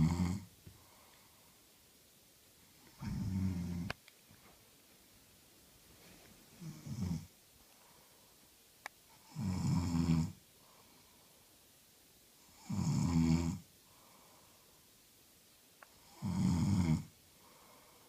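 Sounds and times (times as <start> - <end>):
woman snoring: 0.0 - 0.5, 3.0 - 3.9, 6.6 - 7.3, 9.2 - 10.4, 12.5 - 13.6, 16.0 - 17.1.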